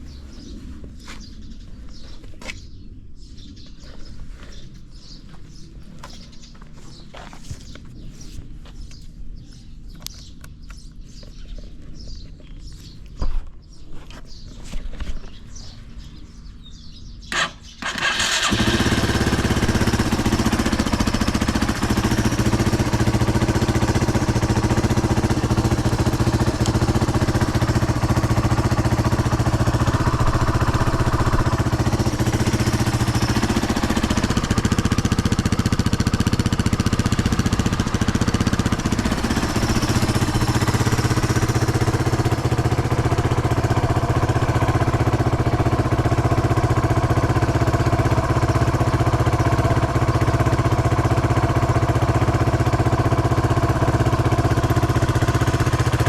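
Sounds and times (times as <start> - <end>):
motorcycle engine idling: 16.7 - 56.0.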